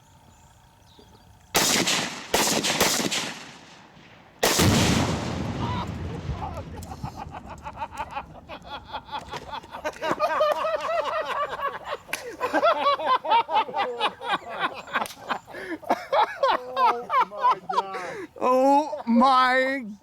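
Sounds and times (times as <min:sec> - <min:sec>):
people laughing and exclaiming: 0:05.4 - 0:19.8.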